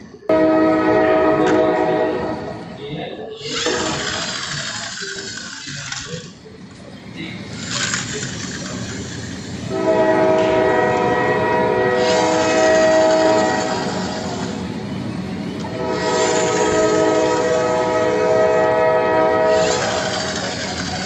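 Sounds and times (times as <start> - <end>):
rumbling train: 0.0 - 21.0
train horn blasts: 0.3 - 2.6, 9.7 - 14.6, 15.6 - 20.5.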